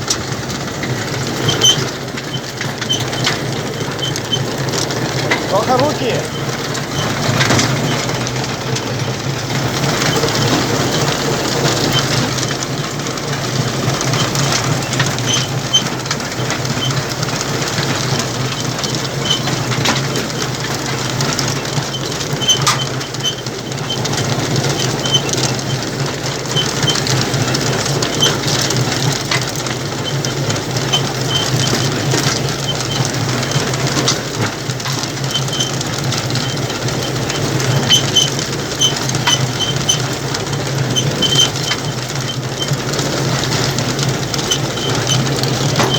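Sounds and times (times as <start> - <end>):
harvesting machinery humming: 0.0 - 45.9
short high squeaks: 40.9 - 42.8, 44.4 - 45.9.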